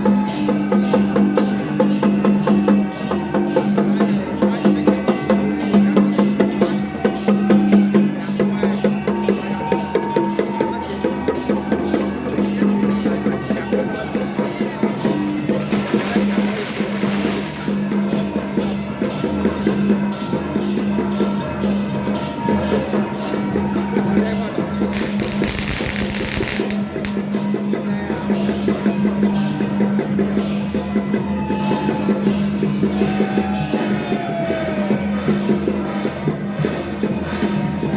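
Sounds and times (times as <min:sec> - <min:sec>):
drums and wood-block strokes: 0:00.0 - 0:09.4, 0:10.0 - 0:37.5
burst of hiss: 0:24.9 - 0:27.2.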